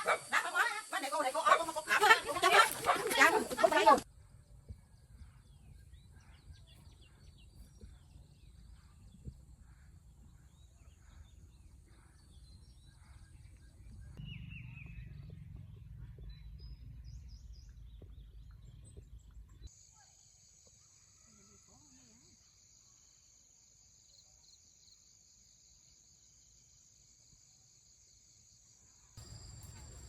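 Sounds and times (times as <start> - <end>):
bird chirps: 5.4 - 19.4
insect chirring: 19.7 - 30.0.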